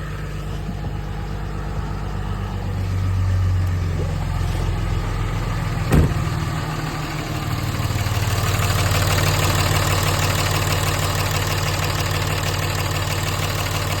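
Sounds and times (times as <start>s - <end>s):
diesel engine idling with ticking: 0.0s - 14.0s
sharp thump: 5.9s - 6.5s.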